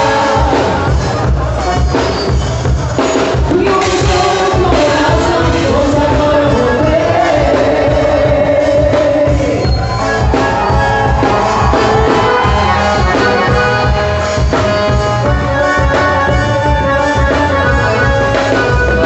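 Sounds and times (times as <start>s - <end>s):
person singing: 0.0s - 2.0s, 2.9s - 14.6s
band playing folk dance music: 0.0s - 19.0s
steady percussion beat: 0.0s - 19.0s.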